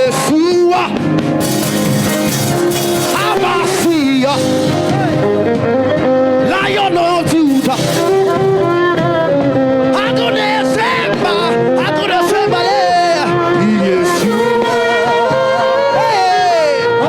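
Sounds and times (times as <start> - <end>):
gospel band playing: 0.0 - 17.0
person singing: 10.0 - 17.0.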